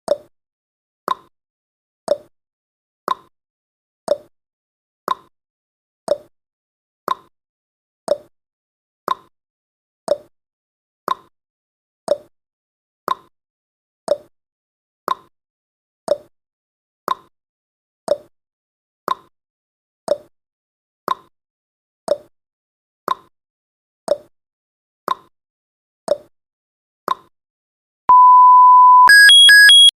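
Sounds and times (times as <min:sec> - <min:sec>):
countdown timer ticking: 0:28.1 - 0:29.9
steady beep: 0:28.1 - 0:29.9.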